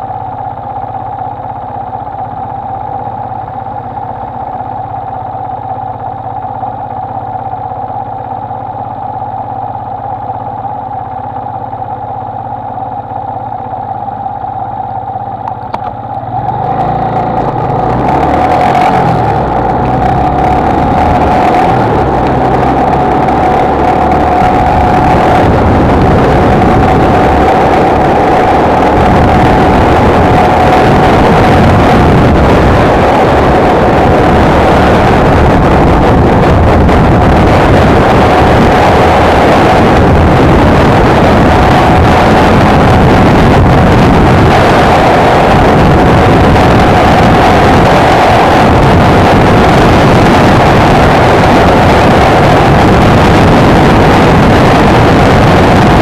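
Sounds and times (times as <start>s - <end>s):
motorcycle engine cruising: 0.0s - 56.0s
wind rushing over microphone: 16.4s - 56.0s.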